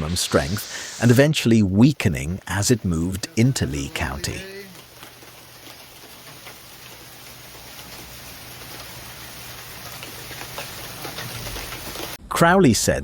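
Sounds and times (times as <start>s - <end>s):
heavy rain: 0.0s - 12.2s.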